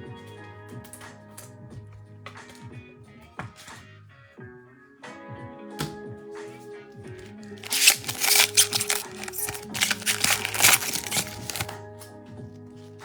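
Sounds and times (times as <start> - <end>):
card pack wrapper tearing: 7.6 - 11.8.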